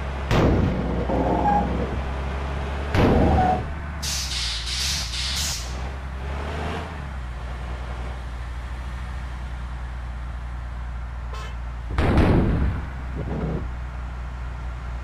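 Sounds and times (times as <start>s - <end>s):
loud horn blast: 11.3s - 11.6s.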